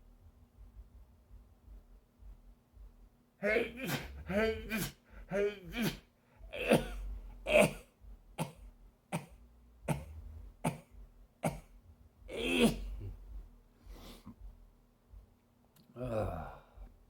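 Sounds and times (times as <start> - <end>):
man coughing: 3.4 - 11.7, 12.3 - 13.1
man sneezing: 3.4 - 11.7, 12.3 - 13.1.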